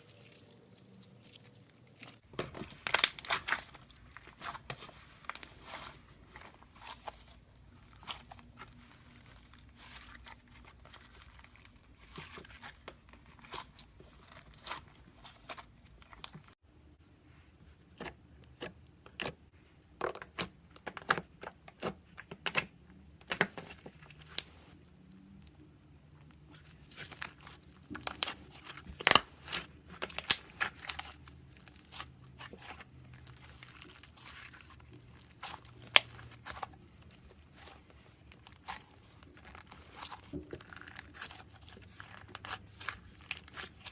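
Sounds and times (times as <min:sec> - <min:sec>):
slime crackling and popping: 0:00.0 - 0:05.8, 0:26.5 - 0:43.9.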